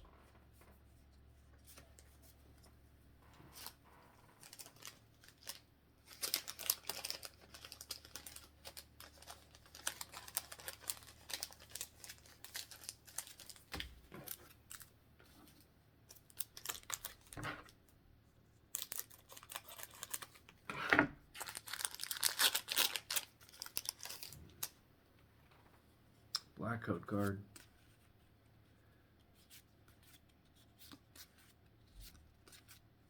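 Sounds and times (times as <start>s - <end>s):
trading cards rustling: 4.4s - 14.9s, 21.4s - 24.7s.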